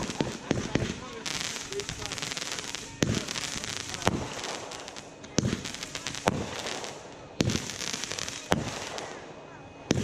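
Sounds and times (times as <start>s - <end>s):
fireworks bangs: 0.0s - 10.0s
fireworks crackling: 0.0s - 10.0s.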